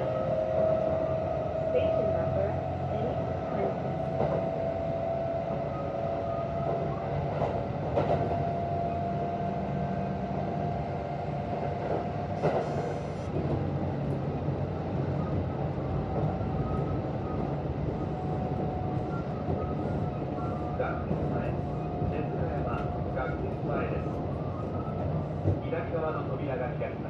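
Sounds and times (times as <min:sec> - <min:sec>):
train running rumble: 0:00.0 - 0:27.0
rail joint clacks: 0:01.8 - 0:04.6, 0:06.6 - 0:09.0, 0:11.7 - 0:14.3.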